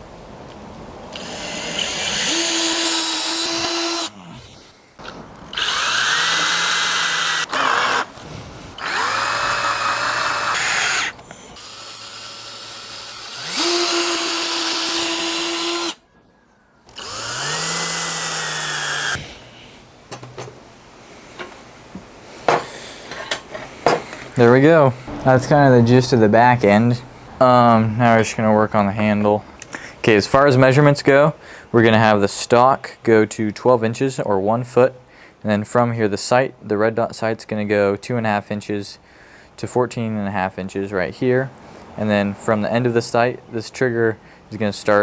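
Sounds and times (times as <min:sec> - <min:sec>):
power drill whining: 0:01.1 - 0:04.1, 0:05.5 - 0:16.0, 0:16.9 - 0:19.2.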